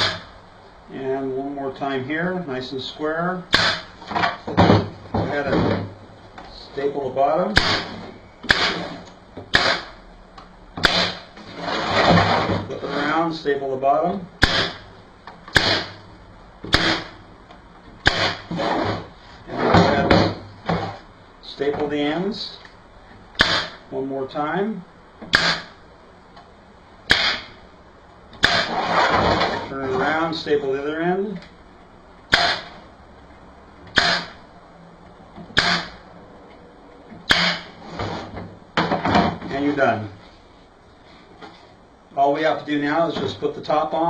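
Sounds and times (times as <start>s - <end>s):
staple gun shots: 7.6s - 8.8s, 15.5s - 16.0s
wooden box scraping: 11.0s - 13.2s, 18.2s - 21.1s, 28.6s - 30.4s, 37.7s - 39.9s.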